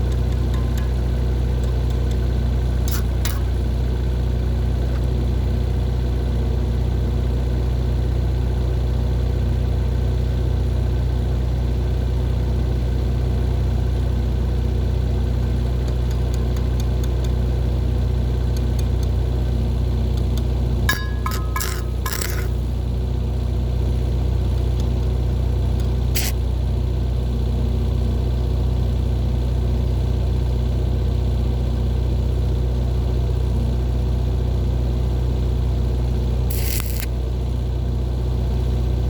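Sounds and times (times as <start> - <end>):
faint clicks: 36.5 - 37.1.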